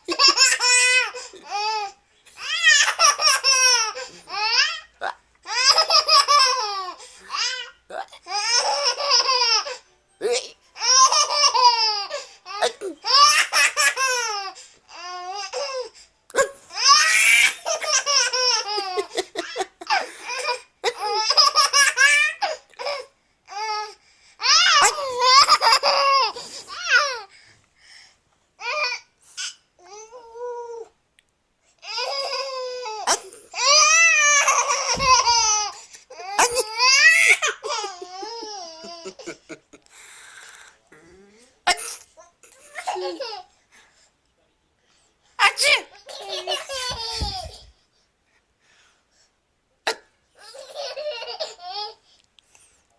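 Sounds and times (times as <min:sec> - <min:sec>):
baby laughing: 0:05.5 - 0:07.6, 0:16.4 - 0:23.0, 0:24.6 - 0:27.2, 0:32.0 - 0:39.8, 0:45.6 - 0:47.7, 0:50.4 - 0:51.9.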